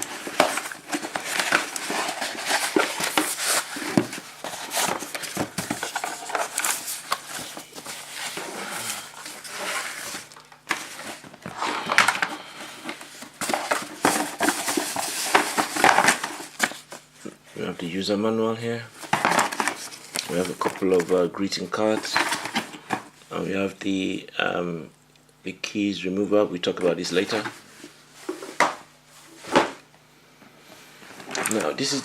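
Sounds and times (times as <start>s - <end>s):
packaging rustling and crinkling: 0.0s - 17.4s, 19.0s - 21.2s, 21.8s - 23.2s.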